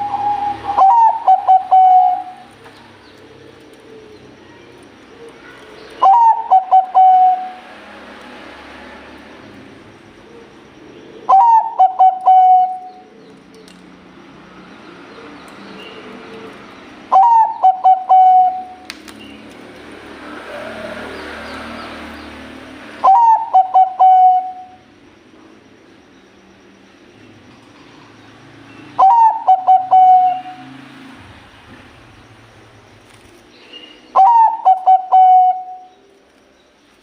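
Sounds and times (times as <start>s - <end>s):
dove cooing song: 0.0s - 4.4s, 5.0s - 7.7s, 10.0s - 13.7s, 14.9s - 18.8s, 23.0s - 24.8s, 29.0s - 30.8s, 34.0s - 36.0s.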